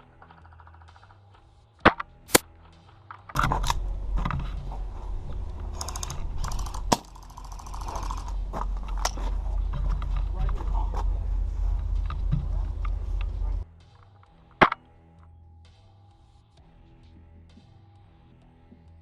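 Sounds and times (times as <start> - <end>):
airsoft gun cracks: 1.8 - 2.5, 14.6 - 14.9
low rumble with knocks: 3.4 - 13.6.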